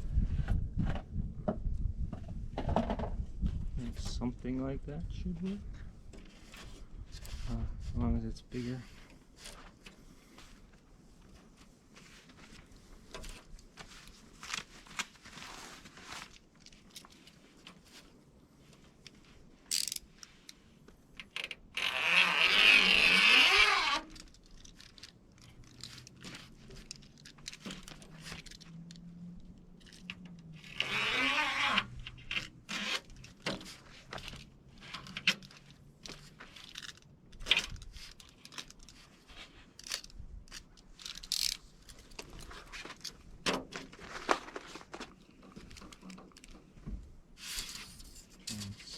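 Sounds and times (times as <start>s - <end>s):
small clicks and rustles: 8.6s - 21.9s, 22.6s - 48.9s
mesh scraping and tearing: 21.8s - 29.0s, 29.8s - 43.1s.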